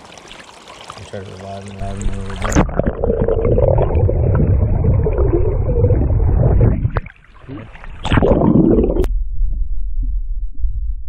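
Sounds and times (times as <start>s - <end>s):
river water sloshing and gurgling: 0.0s - 2.8s
water splash: 0.0s - 9.1s
low steady rumble: 1.8s - 7.0s, 8.6s - 11.0s.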